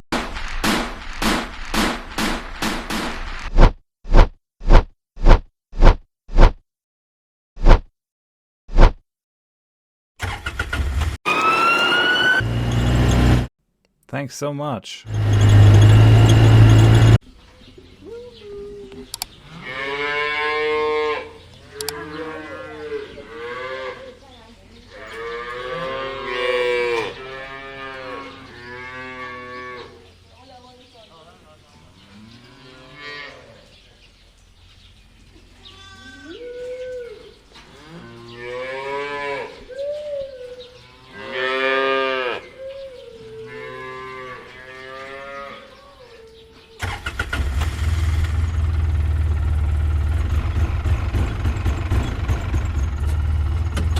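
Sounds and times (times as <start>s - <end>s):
loud engine-like rumble: 15.1s - 17.2s, 46.8s - 53.9s
cows mooing: 19.4s - 24.1s, 24.9s - 30.0s, 35.8s - 39.6s, 40.9s - 42.5s, 43.2s - 45.8s.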